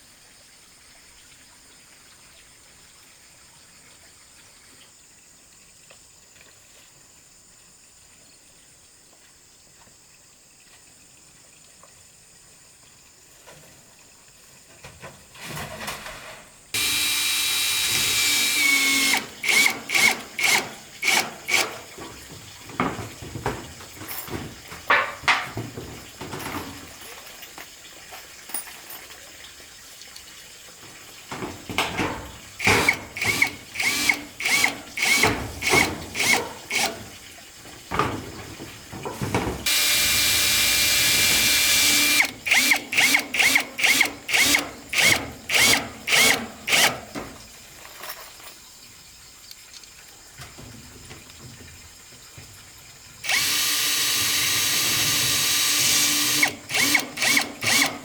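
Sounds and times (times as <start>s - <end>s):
rhythmic tool strokes with squeal: 16.8s - 21.9s, 32.6s - 37.0s, 39.7s - 46.9s, 53.2s - 58.0s
power drill running: 16.8s - 22.0s, 32.6s - 37.1s, 39.6s - 47.1s, 53.2s - 58.0s.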